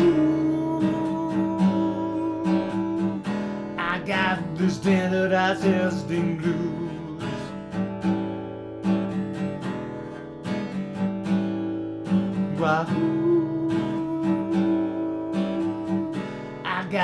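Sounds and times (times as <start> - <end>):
person singing: 0.0 - 7.6, 12.5 - 17.0
acoustic guitar strumming blues: 0.0 - 17.0.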